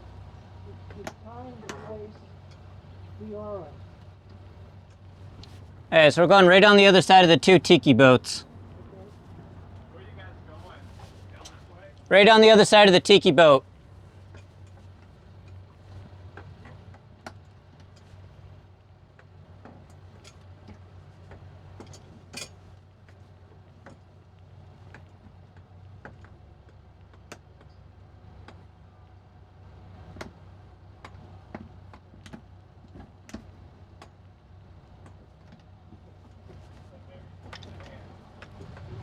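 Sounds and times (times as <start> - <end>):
boat engine idling: 0.0 - 16.9.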